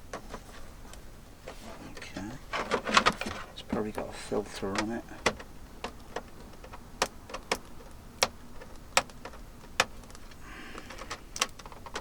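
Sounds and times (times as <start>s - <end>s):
hard plastic clicks and knocks: 4.6s - 10.2s.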